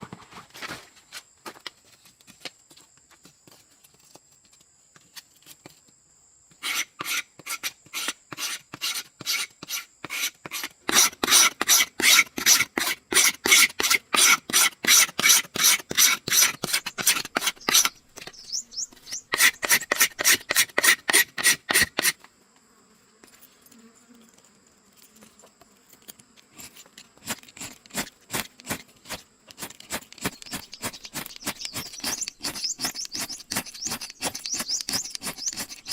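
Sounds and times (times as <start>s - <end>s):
hand tool rasping strokes: 6.6s - 22.2s, 26.0s - 35.9s.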